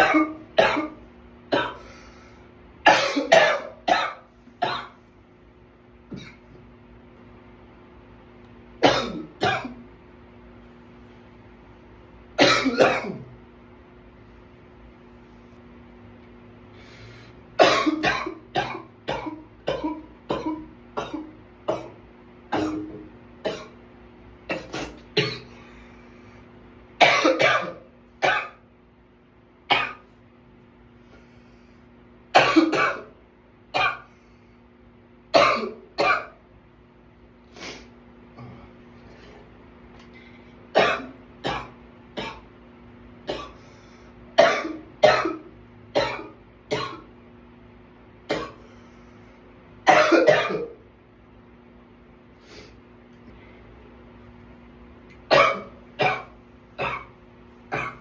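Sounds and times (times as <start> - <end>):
man coughing: 0.0 - 1.9, 2.9 - 5.0, 8.8 - 9.8, 12.4 - 13.3, 17.6 - 23.7, 24.5 - 25.6, 27.0 - 28.6, 32.4 - 33.1, 35.4 - 36.4, 40.8 - 42.4, 44.4 - 47.0, 49.9 - 50.8, 55.3 - 58.0.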